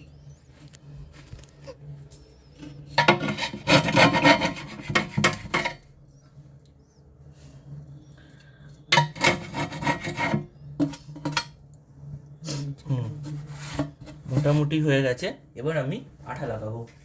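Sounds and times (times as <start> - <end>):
metal chisel scraping glass: 2.7 - 5.9, 8.9 - 10.5.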